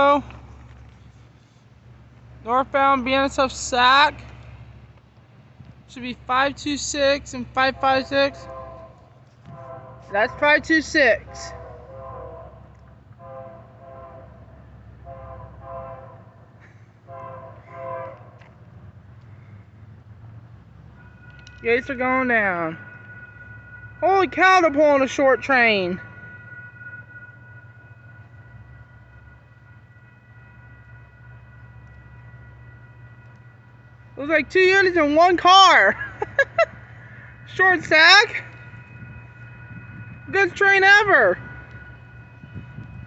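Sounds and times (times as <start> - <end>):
freight train rumbling: 0.0 - 43.0
locomotive air horn chord blasts: 6.5 - 18.7, 20.6 - 43.0
faint high-pitched ringing tone: 21.0 - 43.0.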